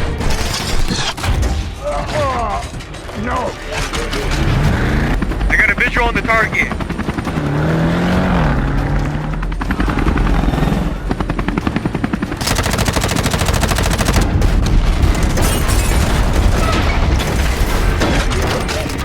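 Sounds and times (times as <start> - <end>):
rapid automatic gunfire: 12.4 - 14.3.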